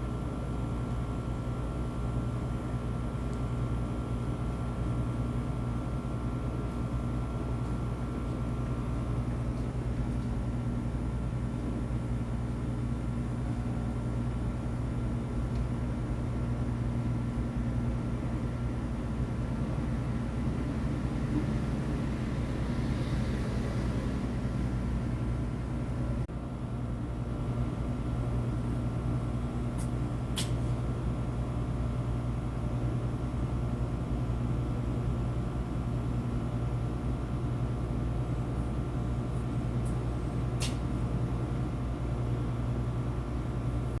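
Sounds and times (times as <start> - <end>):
high steady whine: 0.0 - 32.6
low mechanical drone: 0.0 - 44.0.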